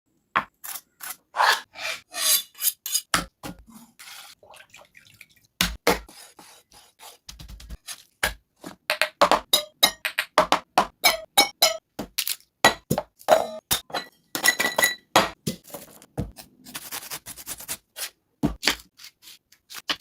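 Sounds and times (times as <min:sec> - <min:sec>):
food preparation rubbing and scraping: 0:00.5 - 0:04.4, 0:06.0 - 0:08.8, 0:15.4 - 0:20.0.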